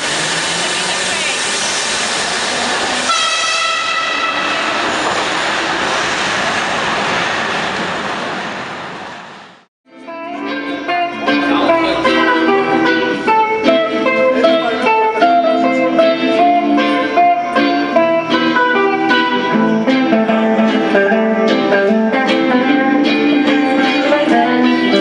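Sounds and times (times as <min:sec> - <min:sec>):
rushing noise: 0:00.0 - 0:09.7
plucked string instrument music: 0:09.9 - 0:25.0.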